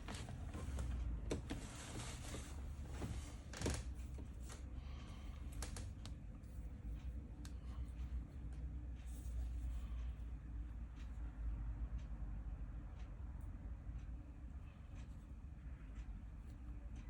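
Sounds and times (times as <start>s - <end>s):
low steady hum: 0.0s - 17.0s
light clicks and taps of handling: 5.4s - 11.2s.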